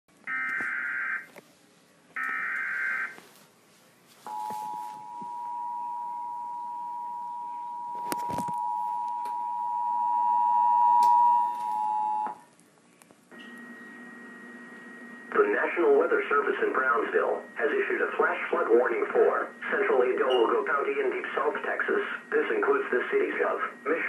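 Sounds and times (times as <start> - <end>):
two-tone alert signal: 4.3 - 12.4.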